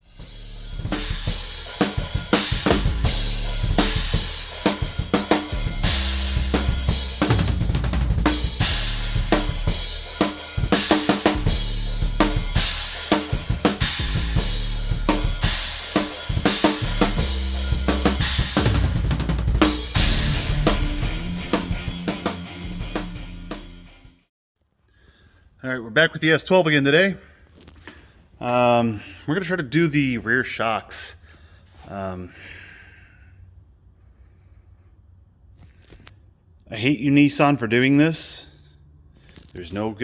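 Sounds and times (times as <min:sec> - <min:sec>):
bass line: 0:00.0 - 0:24.2
rock drum beat: 0:00.0 - 0:24.2.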